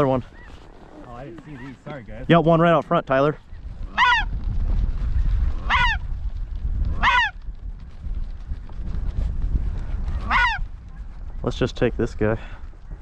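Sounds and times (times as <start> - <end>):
wind rumble on microphone: 0.0 - 13.0
geese honking: 3.9 - 4.3, 5.6 - 6.0, 7.0 - 7.4, 10.2 - 10.6.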